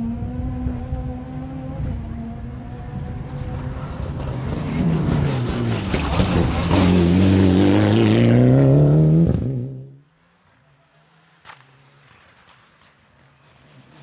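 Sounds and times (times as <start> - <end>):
rally car engine accelerating: 0.0 - 10.0.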